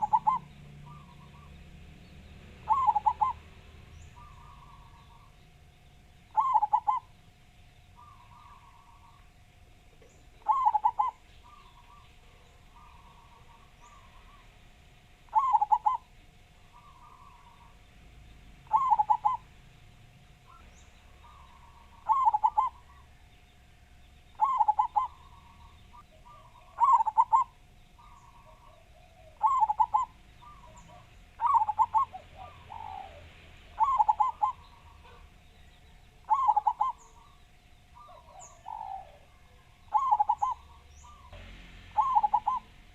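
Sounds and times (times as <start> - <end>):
doves cooing: 0.0 - 1.7, 2.5 - 5.5, 6.2 - 7.2, 8.0 - 17.8, 18.6 - 19.7, 20.3 - 42.9
faint steady hum: 0.0 - 42.9.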